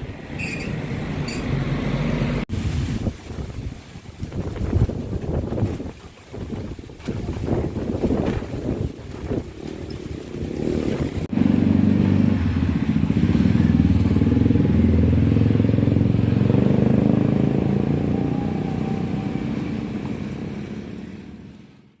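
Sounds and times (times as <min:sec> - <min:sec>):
wind buffeting microphone: 0:02.4 - 0:21.7
vehicle engine running: 0:11.2 - 0:21.9.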